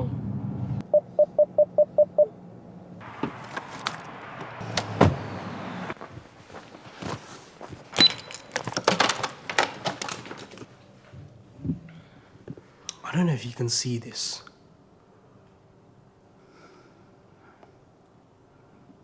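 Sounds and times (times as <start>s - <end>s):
door thunks: 3.0s - 5.5s.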